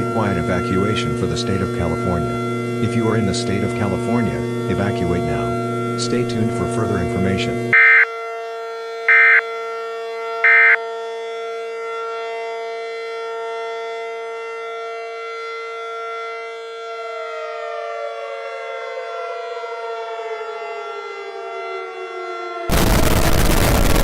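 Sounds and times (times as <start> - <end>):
siren steady tone: 0.0 - 24.0
siren winding down: 0.0 - 24.0
buzzy data burst: 22.7 - 24.0.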